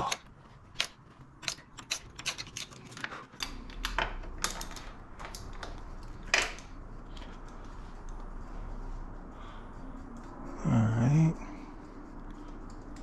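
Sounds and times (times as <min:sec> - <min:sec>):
hand tools clicking on metal: 0:00.0 - 0:08.3.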